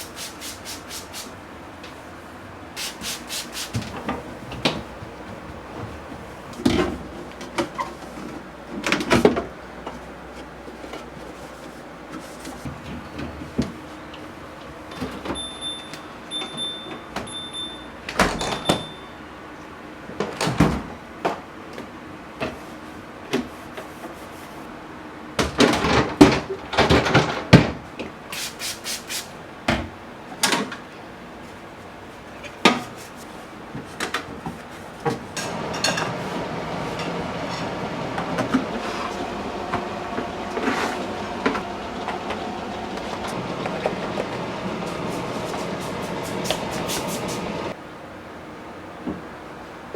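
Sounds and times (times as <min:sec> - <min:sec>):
kitchen containers clattering: 0:35.4 - 0:47.7
steady rushing noise: 0:36.3 - 0:47.8.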